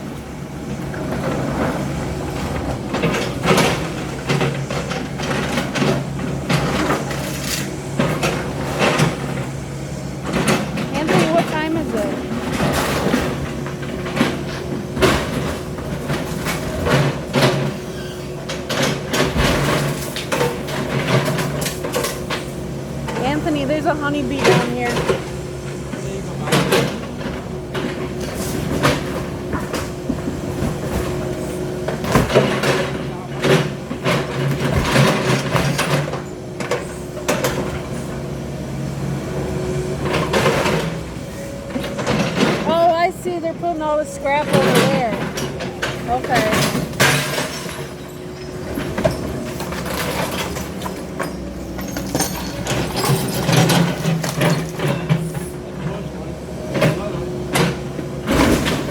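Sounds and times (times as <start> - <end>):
heavy machine engine running: 0.0 - 58.9
knocks and clatter: 10.2 - 17.8, 18.4 - 37.9, 40.0 - 56.0
debris crashing: 41.8 - 55.4.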